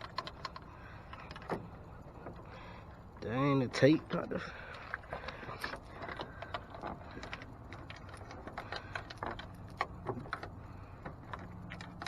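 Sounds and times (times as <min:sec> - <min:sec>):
low steady hum: 0:00.0 - 0:12.0
light clicks and taps: 0:03.7 - 0:12.0.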